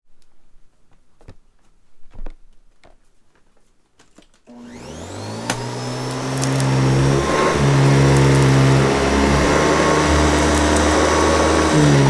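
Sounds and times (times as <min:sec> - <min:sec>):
vacuum cleaner motor whining: 0:04.5 - 0:12.0.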